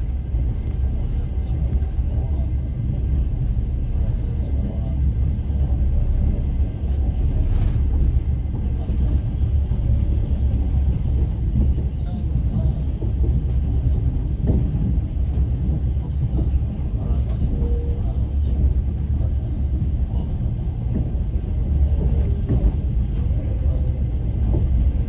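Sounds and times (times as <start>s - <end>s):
train wheels rumbling: 0.0s - 25.0s.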